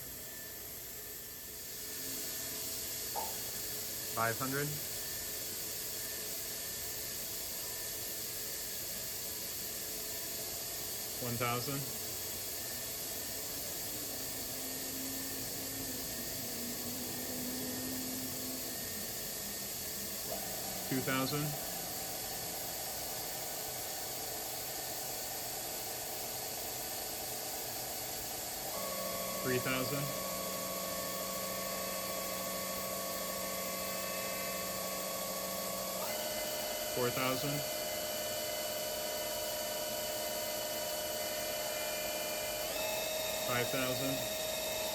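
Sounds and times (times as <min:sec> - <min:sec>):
machine spindle hissing: 0:09.8 - 0:44.9.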